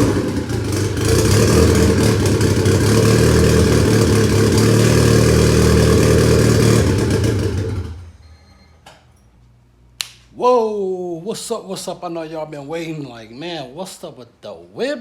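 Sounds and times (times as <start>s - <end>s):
car engine running: 0.0s - 8.0s
sharp click: 10.0s - 10.3s.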